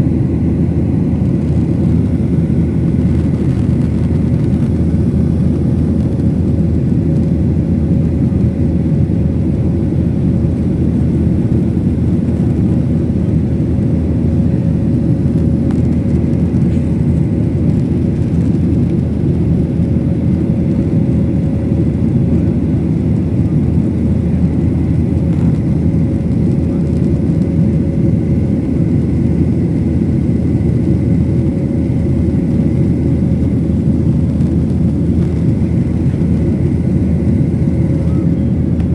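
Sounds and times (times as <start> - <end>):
airliner engines rumbling: 0.0 - 38.9.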